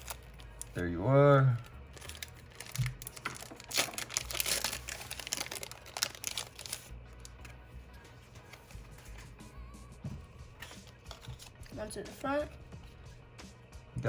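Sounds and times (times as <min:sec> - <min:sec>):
foil wrapper crinkling: 0:00.0 - 0:00.9, 0:01.5 - 0:07.5, 0:10.6 - 0:11.8.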